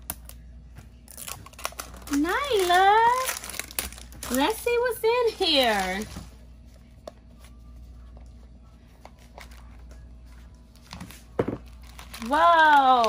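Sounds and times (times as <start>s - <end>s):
steady low hum: 0.0s - 13.0s
plastic packaging rustling and clicking: 1.1s - 4.7s, 10.7s - 13.0s.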